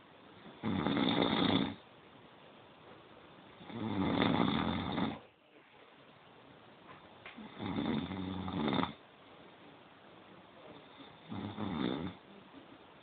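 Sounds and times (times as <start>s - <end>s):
person snoring: 0.6s - 1.8s, 3.6s - 5.2s, 11.0s - 12.2s.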